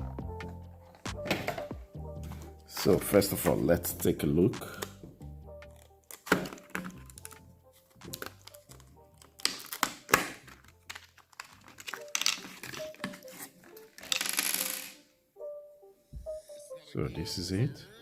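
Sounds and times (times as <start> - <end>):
background music: 0.0 - 18.0
crinkling rustle: 10.4 - 14.1.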